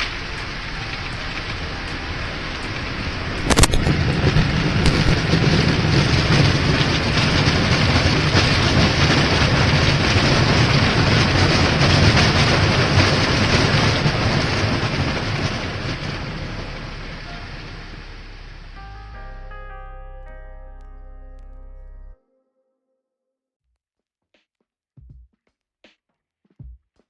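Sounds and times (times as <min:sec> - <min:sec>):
airliner rolling roar: 0:00.0 - 0:18.9.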